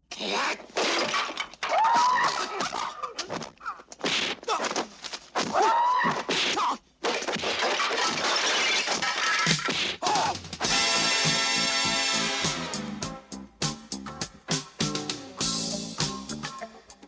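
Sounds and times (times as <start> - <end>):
crashing and smashing: 0.7 - 5.6, 6.3 - 10.0
punch and kick impacts: 3.3 - 7.7.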